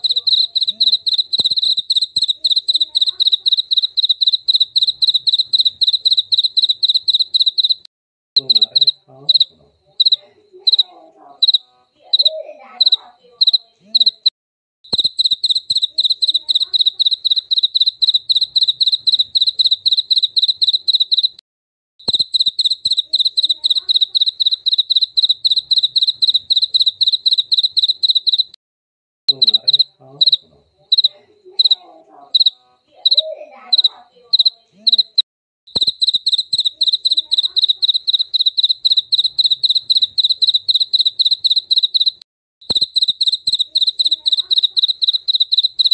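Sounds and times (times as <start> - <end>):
cricket chirping: 0.0 - 14.3, 14.9 - 21.4, 22.0 - 28.6, 29.3 - 45.9.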